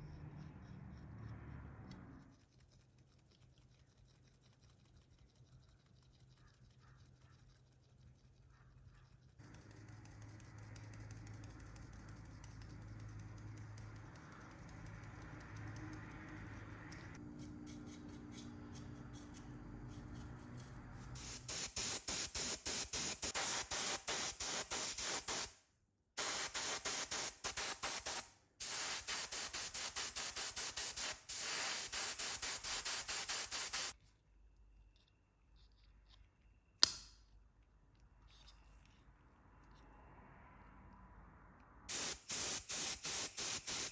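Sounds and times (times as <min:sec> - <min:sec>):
paint spray hissing: 0:21.2 - 0:25.6, 0:26.2 - 0:34.0, 0:41.9 - 0:43.9.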